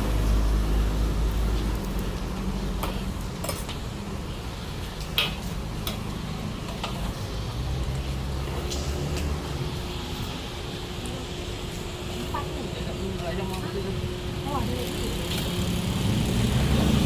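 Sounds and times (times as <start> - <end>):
low traffic rumble: 0.0 - 17.0
metal utensils clinking on griddle: 2.8 - 3.8.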